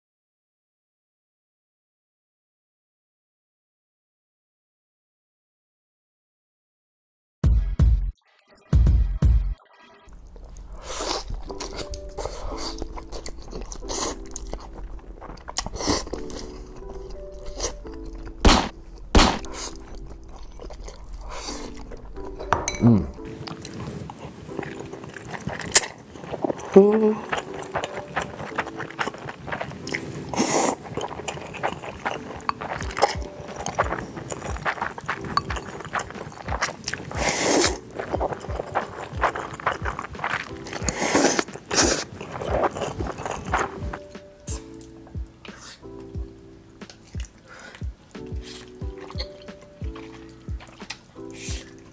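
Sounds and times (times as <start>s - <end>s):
heavy low beats: 7.4s - 8.2s, 18.4s - 19.9s
background music: 7.4s - 51.9s
chewing noodles: 10.1s - 22.5s, 23.1s - 51.9s
small mouth clicks: 48.1s - 51.9s.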